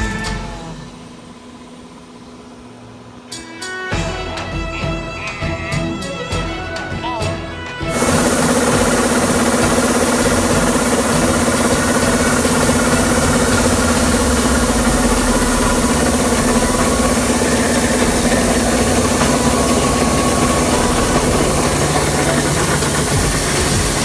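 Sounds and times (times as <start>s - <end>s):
combine harvester running: 7.9s - 24.0s.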